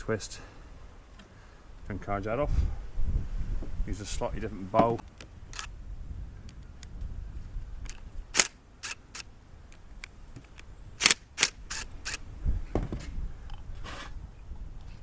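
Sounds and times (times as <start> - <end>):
wind rumble on microphone: 1.8 - 8.4, 9.6 - 15.0.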